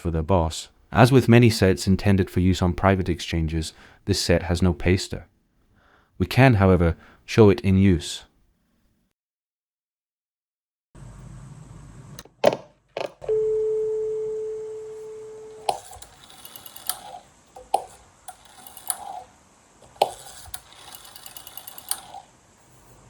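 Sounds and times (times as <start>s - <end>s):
dial tone from loudspeaker: 13.3s - 15.7s
rotary dial pulse clicks: 15.6s - 22.3s.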